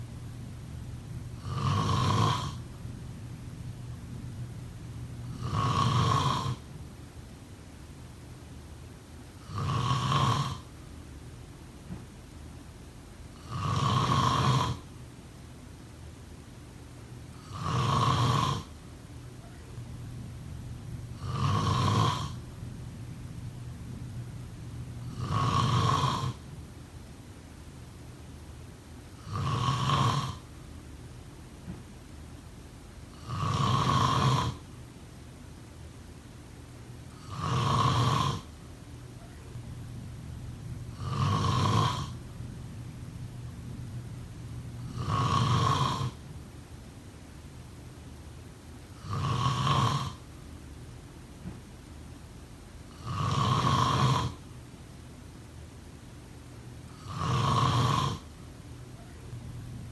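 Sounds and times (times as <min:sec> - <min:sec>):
person snoring: 0:01.3 - 0:02.8, 0:05.2 - 0:06.7, 0:09.4 - 0:10.7, 0:13.4 - 0:14.9, 0:17.4 - 0:18.7, 0:21.0 - 0:22.7, 0:24.5 - 0:26.4, 0:29.2 - 0:30.5, 0:33.1 - 0:34.6, 0:37.2 - 0:38.5, 0:39.5 - 0:46.2, 0:49.0 - 0:50.2, 0:52.9 - 0:54.4, 0:56.9 - 0:58.3.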